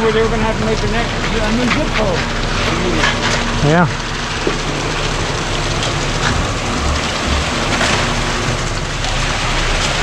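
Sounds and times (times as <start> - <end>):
wet concrete rushing down chute: 0.1 - 10.0
truck engine humming: 3.4 - 10.0.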